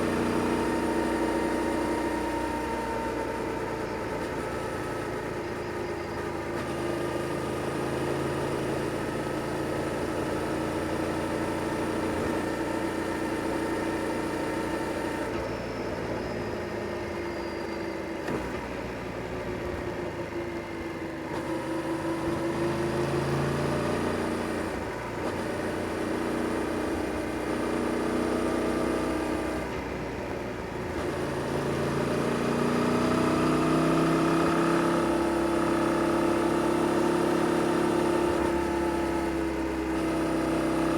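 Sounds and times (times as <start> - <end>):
motorcycle engine revving: 0.0 - 5.4, 30.8 - 40.9.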